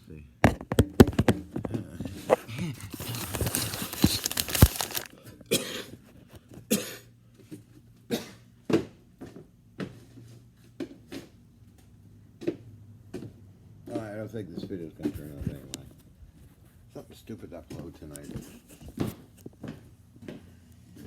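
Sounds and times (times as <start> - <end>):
rustling and handling noise: 0.5 - 5.2, 17.7 - 19.9.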